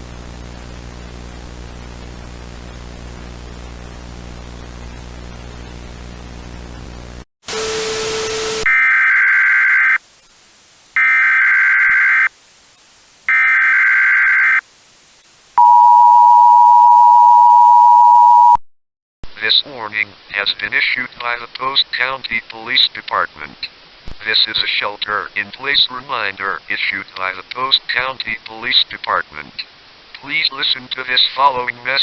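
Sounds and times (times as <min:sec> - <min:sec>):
static with low hum: 0:00.0 - 0:07.2, 0:08.7 - 0:18.6
screechy data bursts: 0:08.7 - 0:10.0, 0:11.0 - 0:12.3, 0:13.3 - 0:14.6
two-tone alert signal: 0:15.6 - 0:18.6.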